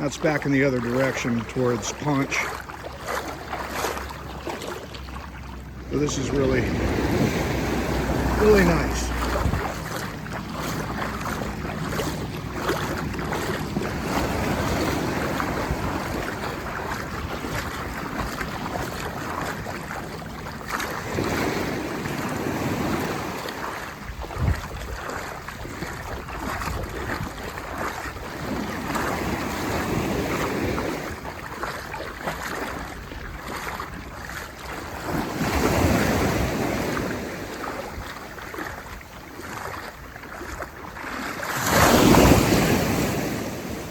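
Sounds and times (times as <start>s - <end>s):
small waves breaking: 0.0s - 43.9s
wind buffeting microphone: 3.0s - 31.8s.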